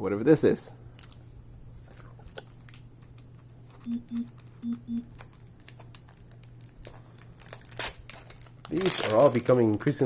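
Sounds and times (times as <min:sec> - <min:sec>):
hands tapping and clicking packaging: 0:02.3 - 0:10.0
low hum: 0:03.7 - 0:05.3.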